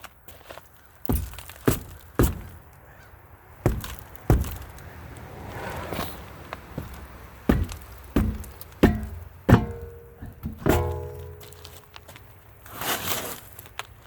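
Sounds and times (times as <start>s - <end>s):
heavy blows on car wheel: 1.1s - 2.8s, 3.7s - 6.1s, 6.7s - 11.9s.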